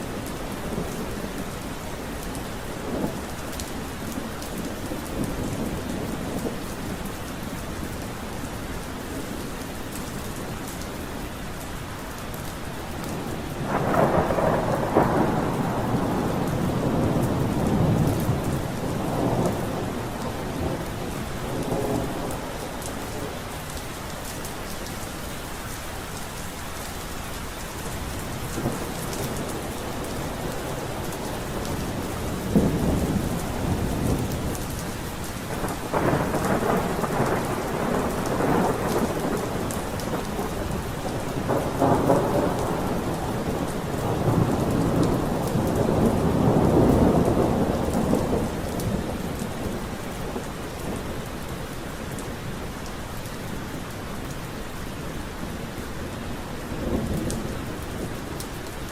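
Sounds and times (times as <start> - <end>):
heavy rain: 0.0 - 58.9
thunder rumbling: 13.1 - 23.6, 28.1 - 51.6.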